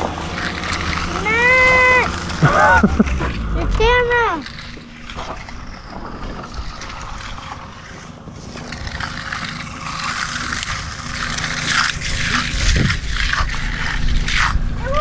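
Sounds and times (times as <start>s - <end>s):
motor running: 0.0s - 14.8s.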